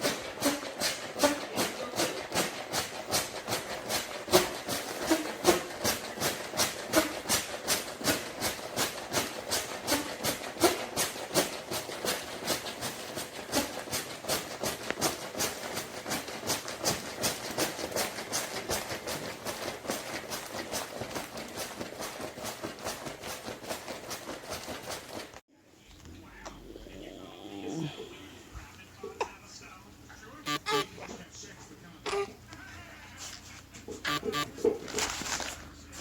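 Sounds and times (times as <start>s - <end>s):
air pump puffs hissing: 0.0s - 25.4s.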